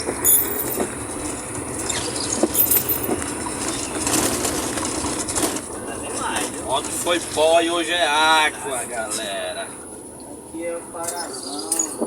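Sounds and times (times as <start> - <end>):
vehicle rumbling on dirt road: 0.0 - 12.0
knocks and rattles: 0.2 - 1.4, 2.4 - 5.6.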